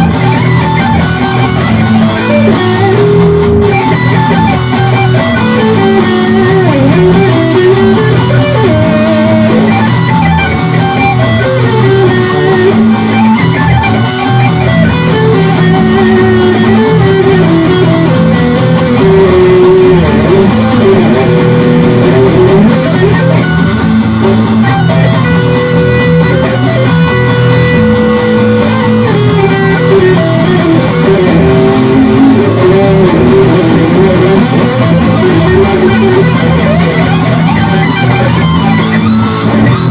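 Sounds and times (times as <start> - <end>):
electric guitar lead melody: 0.0 - 39.9.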